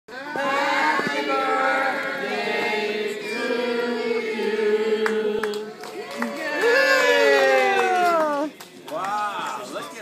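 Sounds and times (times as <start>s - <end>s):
group of people singing: 0.1s - 5.9s.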